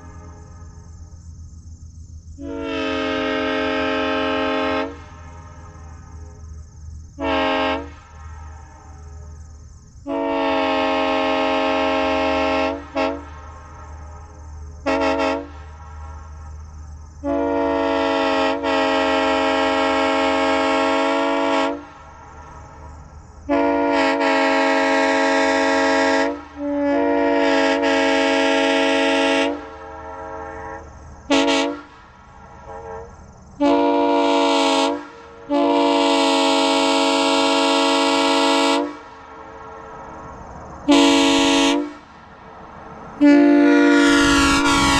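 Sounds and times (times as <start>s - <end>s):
locomotive air horn blasts: 2.4s - 5.5s, 7.2s - 8.1s, 10.1s - 13.4s, 14.8s - 15.7s, 17.2s - 22.0s, 23.5s - 32.0s, 32.6s - 39.5s, 40.9s - 42.1s, 43.2s - 44.9s.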